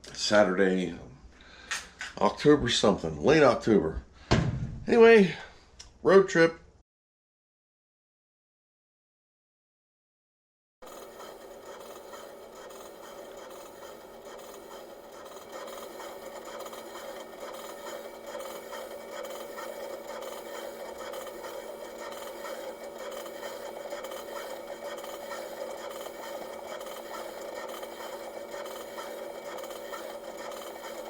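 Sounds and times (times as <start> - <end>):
machine humming: 10.8 - 31.0.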